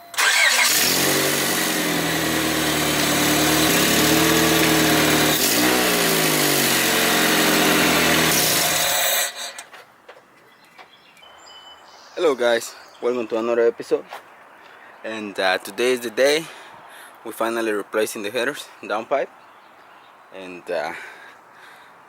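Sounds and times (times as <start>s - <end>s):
leaking exhaust: 0.1s - 9.7s
car engine revving: 0.2s - 9.5s.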